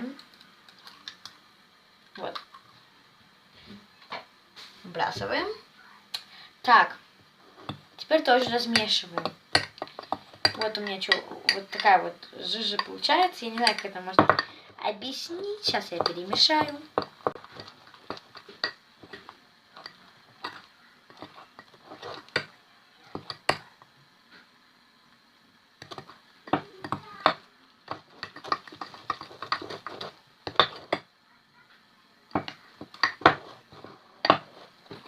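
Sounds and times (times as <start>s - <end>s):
spoon stirring thick batter: 7.4s - 14.6s, 15.4s - 23.9s, 25.8s - 31.1s, 32.3s - 35.0s.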